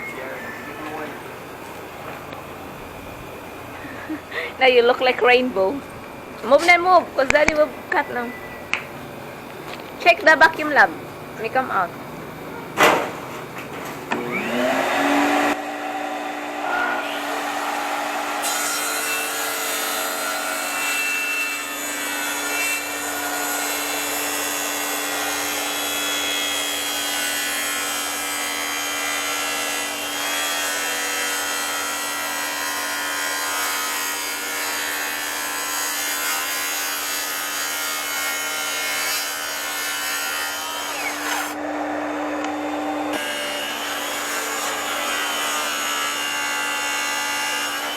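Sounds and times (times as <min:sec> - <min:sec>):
circular saw cutting wood: 0:14.1 - 0:47.9.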